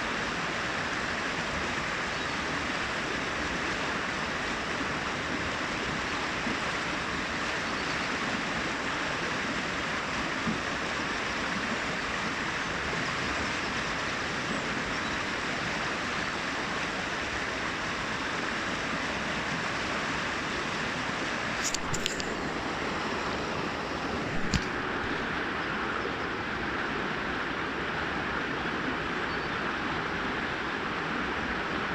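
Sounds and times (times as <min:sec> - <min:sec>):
brook water babbling: 0:00.0 - 0:31.9
brief clicks: 0:21.6 - 0:22.6, 0:24.3 - 0:24.8.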